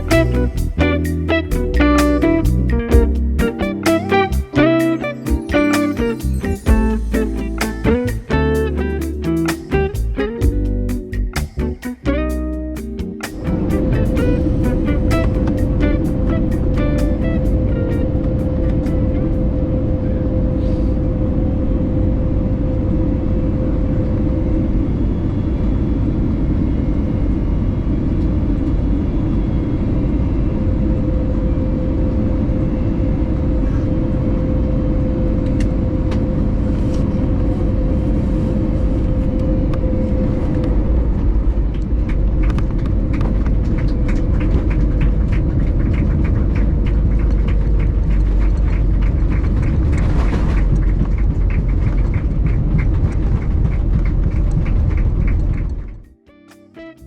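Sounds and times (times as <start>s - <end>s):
vehicle rumble from inside: 32.0s - 56.0s.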